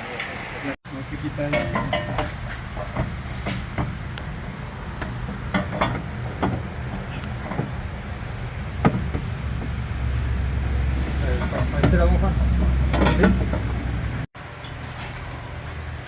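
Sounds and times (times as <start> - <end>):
steady low hum: 0.0 - 16.0
metal tools knocking and clinking: 1.4 - 7.9, 10.7 - 13.9.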